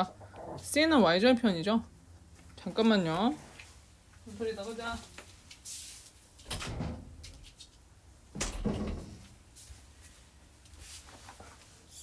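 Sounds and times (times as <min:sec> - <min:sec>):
door opening and shutting: 0:08.4 - 0:09.2.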